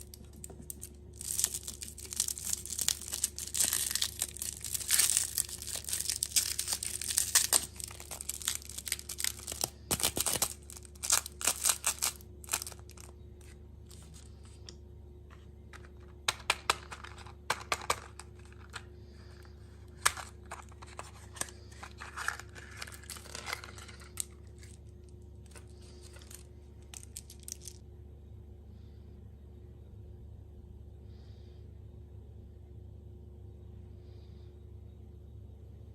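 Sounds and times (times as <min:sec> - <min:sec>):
plastic packaging crinkling: 0:00.0 - 0:14.6, 0:16.8 - 0:27.8.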